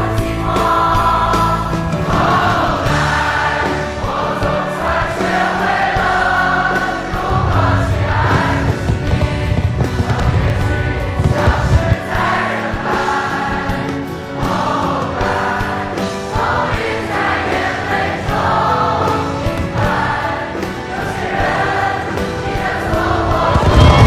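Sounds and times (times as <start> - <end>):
choir singing: 0.0 - 24.0
low rumble: 7.2 - 12.2, 23.0 - 24.0.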